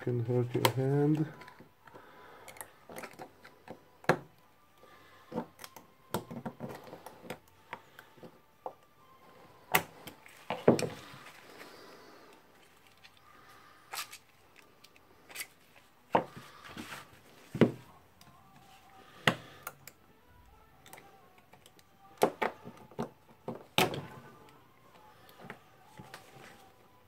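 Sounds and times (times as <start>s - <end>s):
screwdriver clicking on metal parts: 0.6s - 4.1s, 5.3s - 7.6s, 20.8s - 23.1s.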